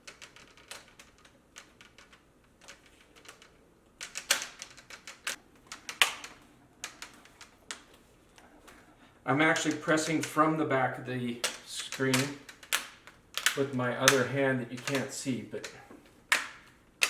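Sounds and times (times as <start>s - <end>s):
plastic clips clicking and snapping: 11.4s - 16.8s.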